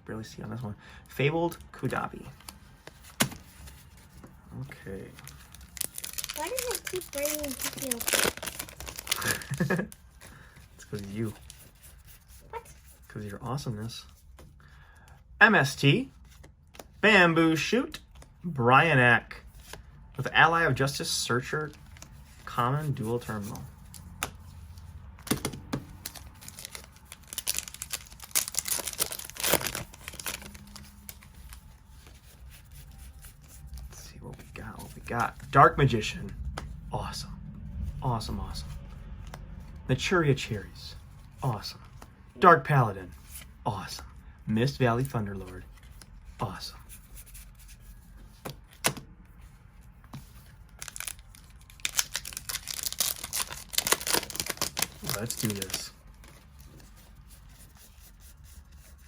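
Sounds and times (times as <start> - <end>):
foil wrapper crinkling and tearing: 5.2 - 10.0, 25.9 - 31.8, 50.6 - 56.3.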